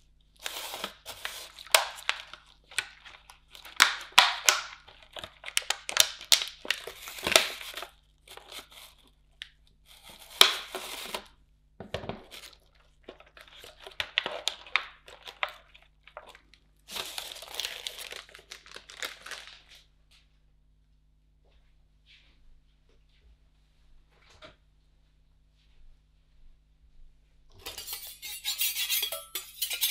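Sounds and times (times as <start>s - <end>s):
plastic wrapper crinkling and tearing: 0.4s - 11.4s, 12.1s - 19.9s.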